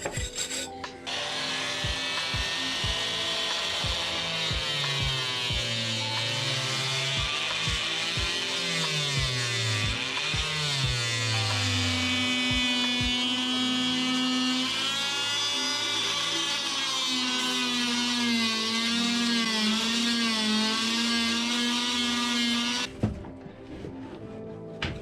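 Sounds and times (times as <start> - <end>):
drum beats: 0.0 - 1.1, 1.8 - 3.0, 3.6 - 5.8, 7.2 - 11.8, 12.5 - 13.3.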